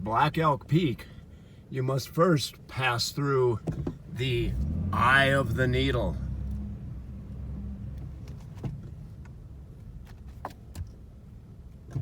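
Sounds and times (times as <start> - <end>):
car driving rumble: 0.0 - 12.0.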